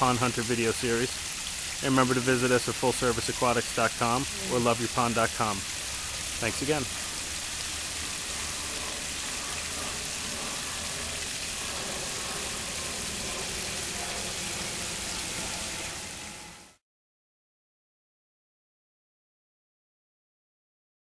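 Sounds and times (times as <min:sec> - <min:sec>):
waterfall splashing: 0:00.0 - 0:16.3.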